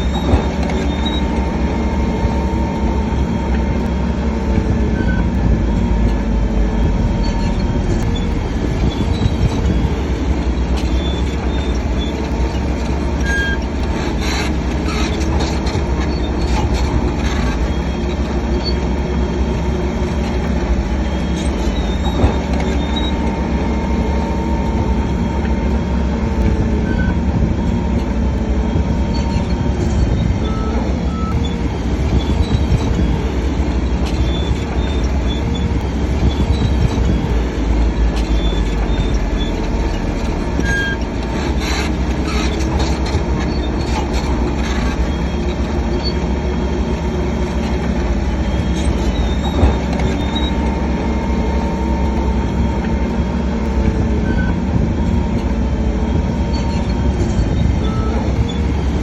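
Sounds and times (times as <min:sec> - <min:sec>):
diesel engine rumble: 0:00.0 - 0:59.0
steel tracks squeaking and clanking: 0:00.0 - 0:59.0.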